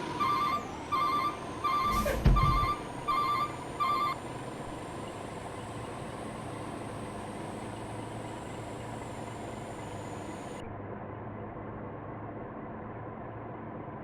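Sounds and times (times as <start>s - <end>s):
vehicle engine running: 0.0s - 14.0s
electronic beeping: 0.2s - 4.2s.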